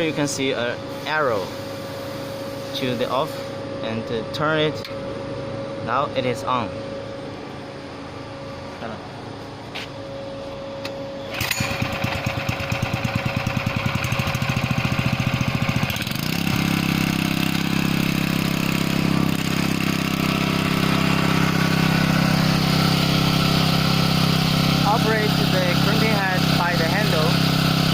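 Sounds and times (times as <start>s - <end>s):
small gasoline engine running: 11.3s - 27.9s.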